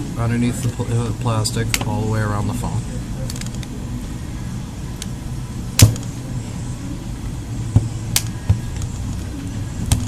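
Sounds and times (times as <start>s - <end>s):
steady low hum: 0.0s - 10.0s.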